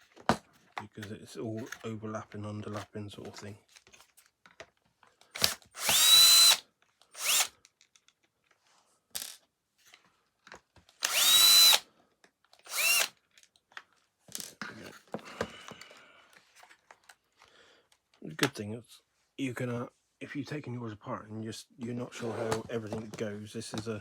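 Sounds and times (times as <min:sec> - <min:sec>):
electric screwdriver whining: 0:05.4 - 0:07.5, 0:11.0 - 0:11.8, 0:12.6 - 0:13.1.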